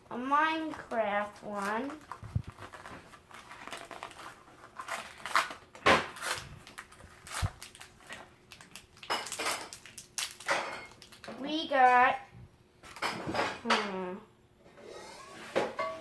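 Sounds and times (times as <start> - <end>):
plastic packaging crinkling and tearing: 0.6 - 11.4.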